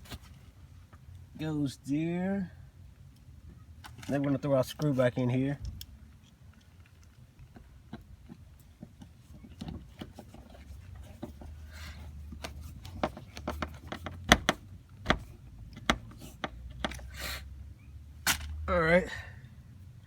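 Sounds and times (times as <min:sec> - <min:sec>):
clicks and knocks of plastic trim: 0:12.4 - 0:17.0.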